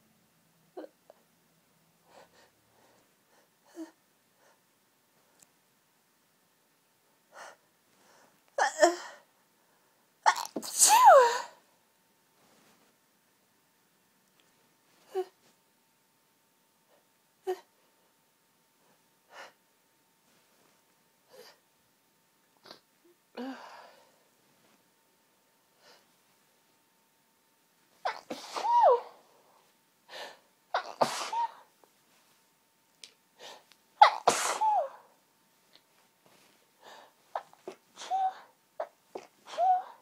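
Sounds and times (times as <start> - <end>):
woman sneezing: 10.3 - 11.6, 28.1 - 29.2, 30.8 - 31.7, 34.0 - 35.1.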